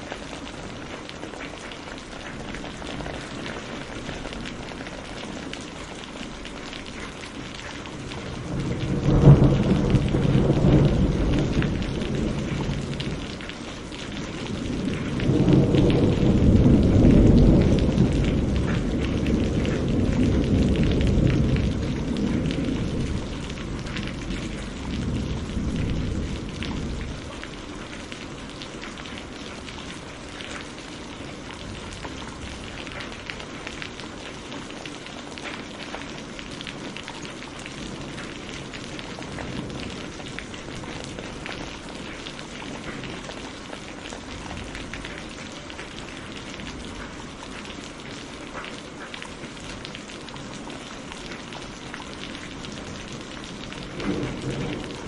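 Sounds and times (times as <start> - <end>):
steady rain falling: 0.0 - 55.0
thunder rumble: 7.9 - 30.4, 52.4 - 55.0.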